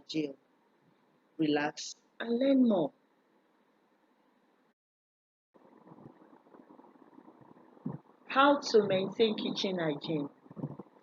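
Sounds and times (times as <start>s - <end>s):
light crackle: 5.6s - 11.0s.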